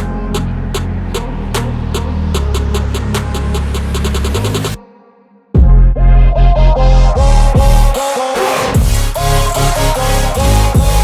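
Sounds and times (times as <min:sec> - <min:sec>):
heavy bass line: 0:00.0 - 0:04.8, 0:05.6 - 0:08.0, 0:08.6 - 0:11.0
music with ticking beat: 0:00.0 - 0:04.8, 0:07.2 - 0:08.1, 0:08.8 - 0:11.0.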